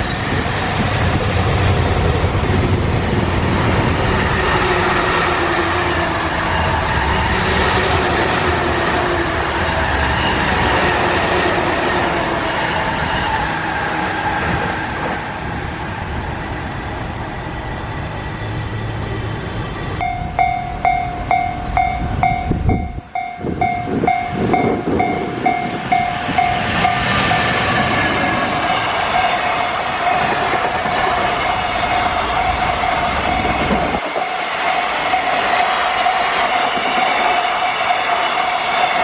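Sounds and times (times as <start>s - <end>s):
freight train wheel and rail noise: 0.0s - 39.0s
level-crossing warning bell: 20.0s - 27.7s, 33.2s - 34.4s.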